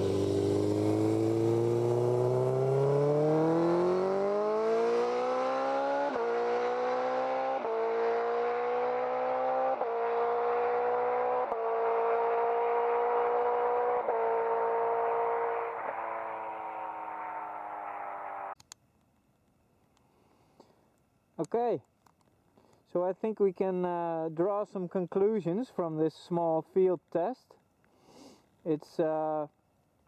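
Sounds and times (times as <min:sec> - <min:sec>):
motorcycle engine accelerating hard: 0:00.0 - 0:18.5.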